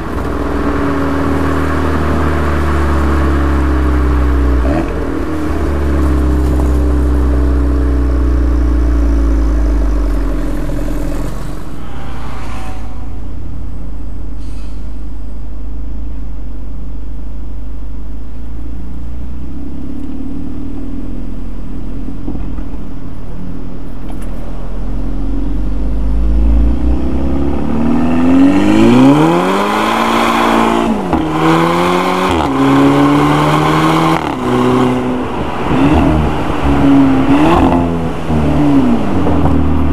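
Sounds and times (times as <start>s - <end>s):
car engine accelerating: 0.0s - 14.4s, 18.5s - 39.9s.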